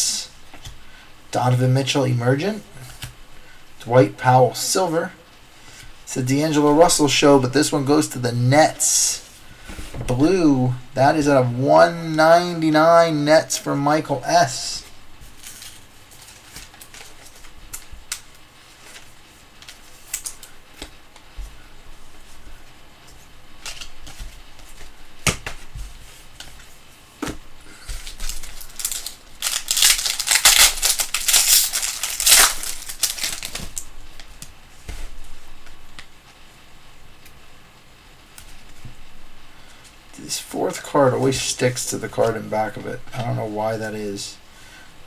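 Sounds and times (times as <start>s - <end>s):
foil wrapper tearing and crinkling: 28.0s - 33.9s.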